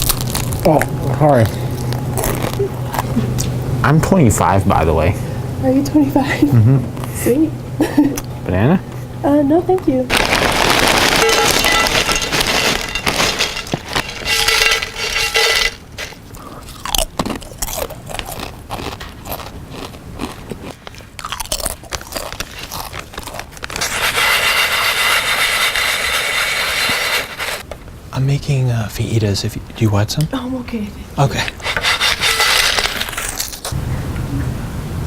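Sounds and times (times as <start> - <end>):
food crackling and crunching: 0.0 - 3.6, 10.1 - 27.7, 31.3 - 33.8.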